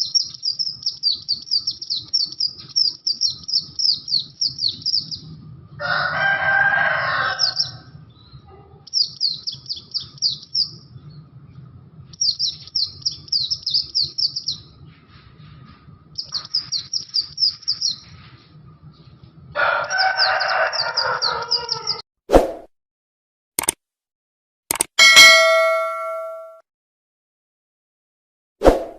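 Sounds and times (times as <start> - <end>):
bird chirping rapidly: 0.0 - 5.4, 7.4 - 11.2, 12.2 - 14.8, 16.1 - 18.1, 19.9 - 22.0
sharp click: 23.6 - 23.8, 24.7 - 25.7.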